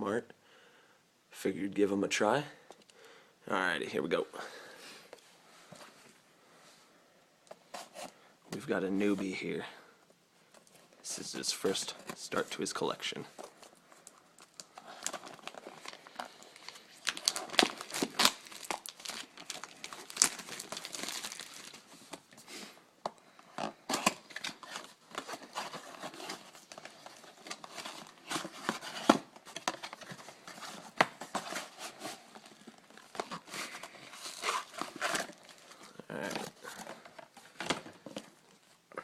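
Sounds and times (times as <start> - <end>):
plastic wrapping crinkling and tearing: 13.4 - 22.4, 23.7 - 39.0.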